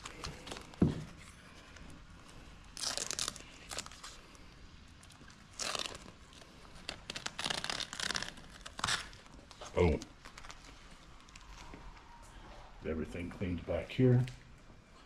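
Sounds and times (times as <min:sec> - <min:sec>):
tape peeling and crumpling: 0:00.0 - 0:12.1.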